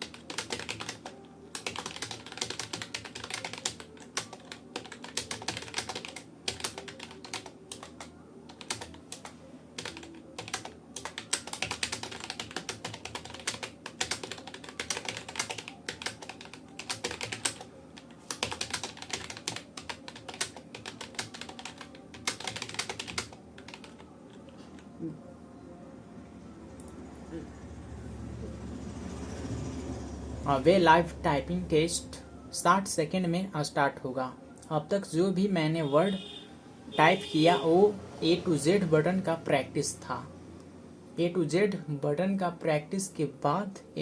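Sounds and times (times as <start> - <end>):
keyboard typing: 0.0 - 25.0.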